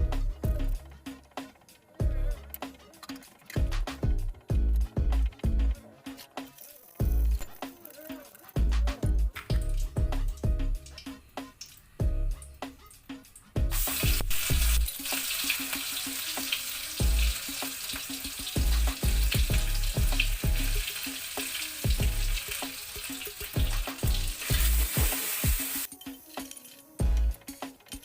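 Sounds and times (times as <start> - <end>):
background music with steady beat: 0.0 - 28.0
food sizzling in hot oil: 13.4 - 27.0
scraping and clinks of stirring: 25.9 - 27.0.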